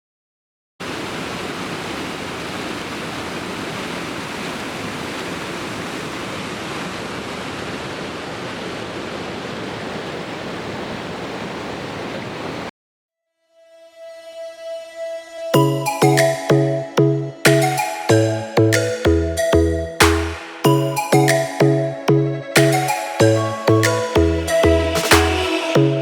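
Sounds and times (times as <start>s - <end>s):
waterfall rushing: 0.8s - 12.7s.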